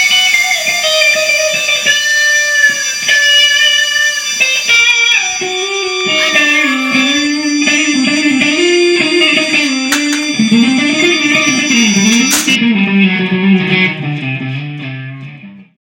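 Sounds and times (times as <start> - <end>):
steady high whine: 0.0 - 14.6
guitar duet: 0.0 - 15.8
sharp click: 9.6 - 10.5, 12.0 - 12.6.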